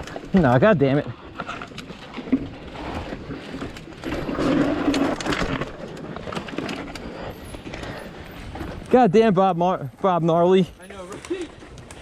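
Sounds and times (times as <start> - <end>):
bike crunching over rocky ground: 0.0 - 9.4.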